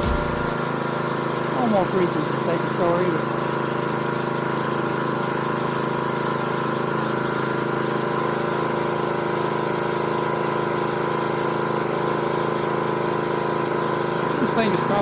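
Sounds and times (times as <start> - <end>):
pressure washer engine running: 0.0 - 15.0
water spraying: 0.0 - 15.0.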